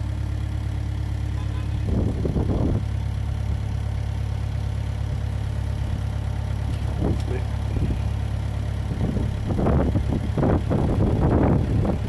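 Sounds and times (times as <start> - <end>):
forklift engine idling: 0.0 - 12.0.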